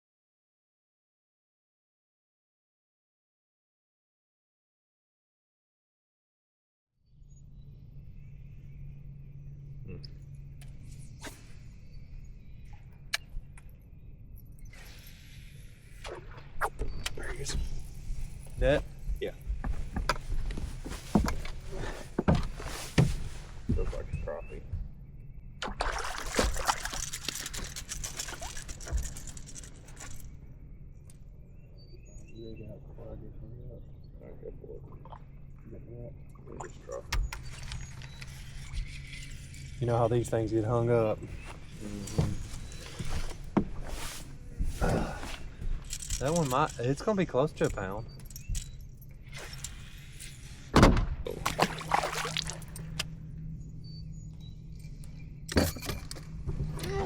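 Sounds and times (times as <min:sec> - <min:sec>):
low hum: 0:07.2 - 0:57.0
fish thrashing slaps and clicks: 0:25.6 - 0:29.2, 0:51.4 - 0:53.1
water splashing and sloshing: 0:25.6 - 0:30.2, 0:51.3 - 0:53.1
water dripping: 0:51.5 - 0:53.0.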